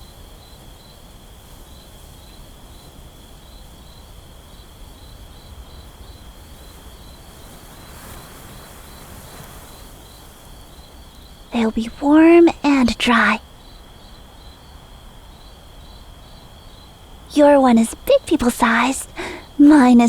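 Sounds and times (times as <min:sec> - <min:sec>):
crickets chirping: 0:00.0 - 0:20.0
soft background hiss: 0:00.0 - 0:20.0.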